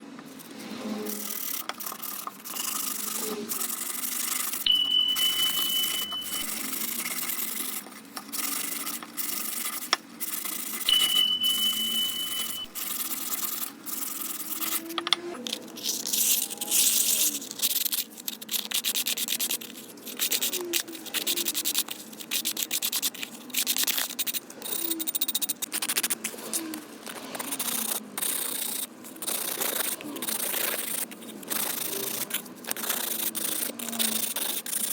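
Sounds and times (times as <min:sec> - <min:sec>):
sandpaper scratching ceramic: 0:00.3 - 0:14.9, 0:15.6 - 0:34.9
steady high tone: 0:04.7 - 0:07.2, 0:10.9 - 0:12.9.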